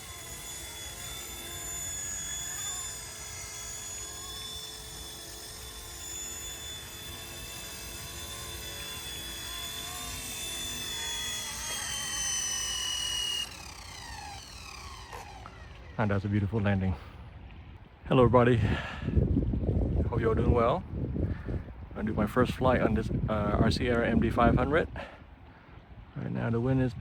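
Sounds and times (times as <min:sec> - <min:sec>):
toy helicopter motor whining: 0:00.0 - 0:17.1.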